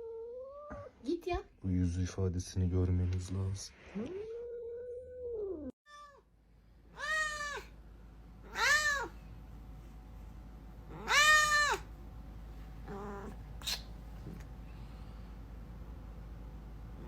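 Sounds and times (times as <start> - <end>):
cat meowing: 6.9 - 7.7, 8.5 - 9.2, 10.9 - 11.9.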